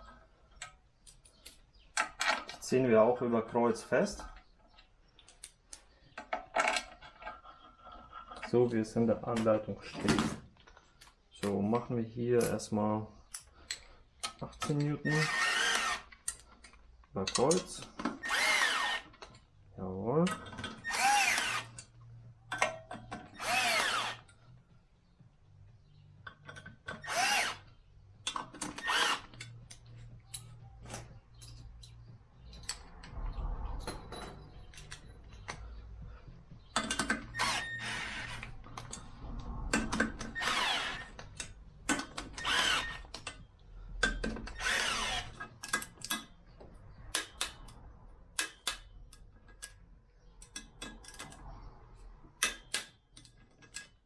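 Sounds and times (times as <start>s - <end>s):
cordless drill bursts: 15.1s - 16.1s, 18.2s - 19.1s, 20.9s - 21.7s, 23.4s - 24.2s, 27.0s - 27.6s, 28.8s - 29.3s, 37.3s - 38.4s, 40.4s - 41.1s, 42.4s - 43.1s, 44.6s - 45.4s.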